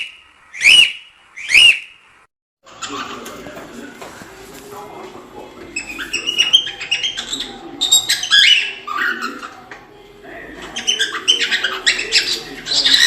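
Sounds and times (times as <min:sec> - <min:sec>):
young birds chirping and peeping: 0:00.0 - 0:02.0, 0:05.7 - 0:09.7, 0:10.3 - 0:13.0.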